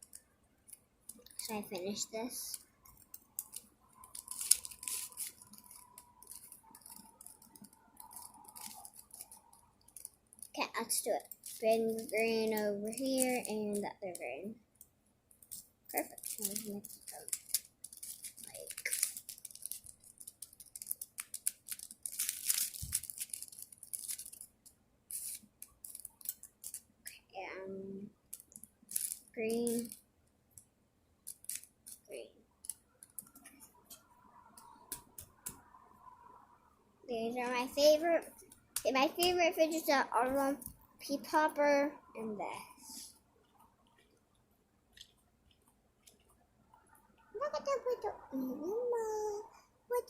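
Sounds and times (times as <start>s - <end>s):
plastic toys crinkling and clicking: 0.0s - 27.2s, 28.2s - 35.7s, 37.4s - 41.4s, 44.9s - 50.0s
fidget material crackling: 0.0s - 36.1s, 37.1s - 50.0s.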